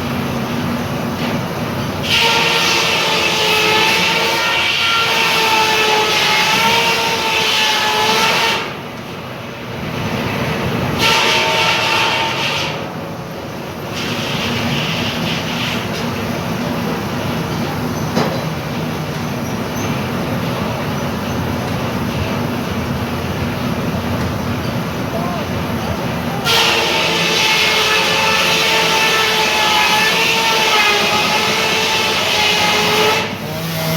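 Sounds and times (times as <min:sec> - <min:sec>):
engine and machinery rumbling: 0:00.0 - 0:33.9
steam engine whistle blowing: 0:02.0 - 0:08.8, 0:11.0 - 0:12.9, 0:24.6 - 0:33.9.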